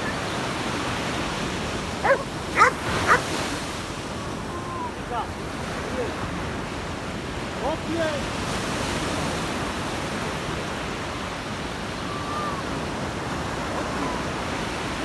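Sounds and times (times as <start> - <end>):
sea surf washing: 0.0 - 15.0
dog barking: 2.0 - 3.4.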